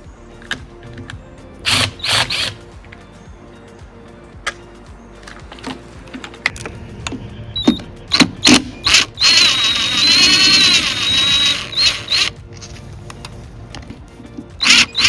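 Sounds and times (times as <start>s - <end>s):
cordless drill spinning with whine: 1.6s - 2.6s, 7.6s - 12.4s, 14.6s - 15.0s.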